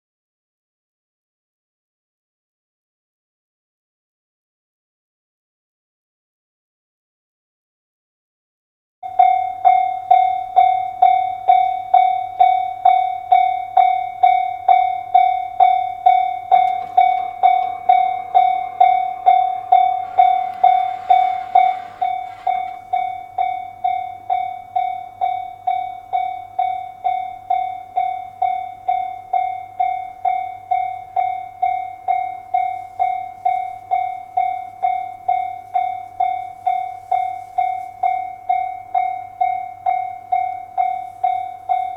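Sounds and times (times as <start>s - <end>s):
electronic level-crossing bell: 9.0s - 41.9s
rushing noise: 16.3s - 23.1s.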